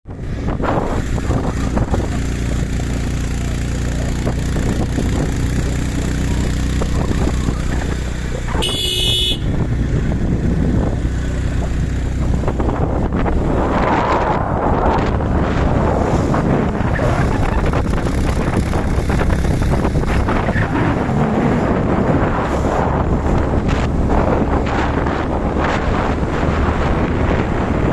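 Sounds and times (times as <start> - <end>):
motorcycle engine running: 0.1 - 27.9
wind noise on microphone: 0.1 - 27.9
vehicle horn honking: 8.5 - 9.6.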